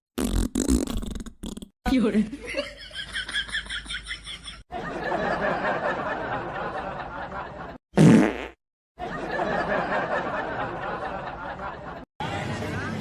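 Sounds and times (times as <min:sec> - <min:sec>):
loud wet fart: 0:00.2 - 0:01.8, 0:08.0 - 0:08.6.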